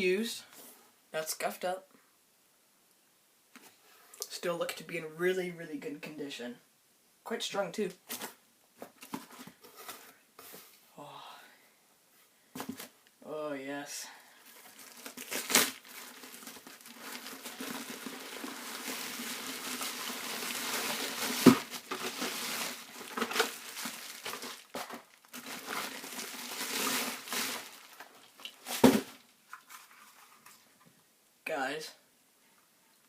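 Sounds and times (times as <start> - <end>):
plastic packaging crinkling: 14.4 - 30.6.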